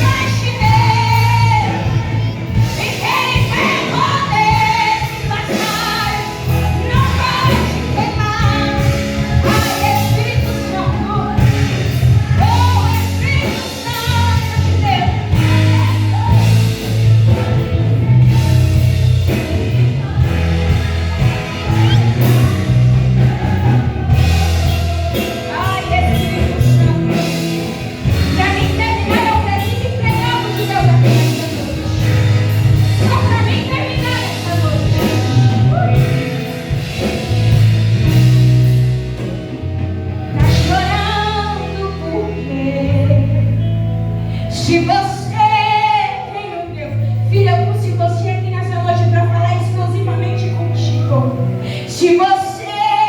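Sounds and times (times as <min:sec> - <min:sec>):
woman singing gospel: 0:00.0 - 0:36.2, 0:40.2 - 0:53.0
bass line: 0:00.0 - 0:53.0
drum beat: 0:17.4 - 0:29.5.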